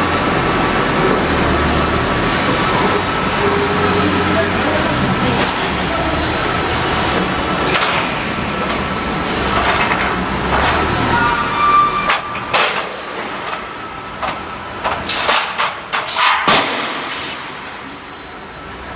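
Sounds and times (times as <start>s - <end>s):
sharp metal clanks: 14.9s - 17.5s.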